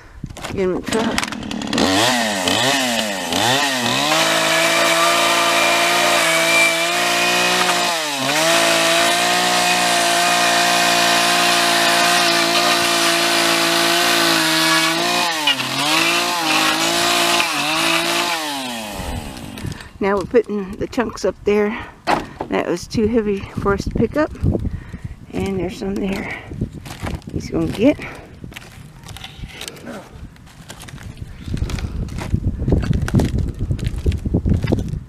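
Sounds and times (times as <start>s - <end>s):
chainsaw cutting boards: 0.8s - 20.3s.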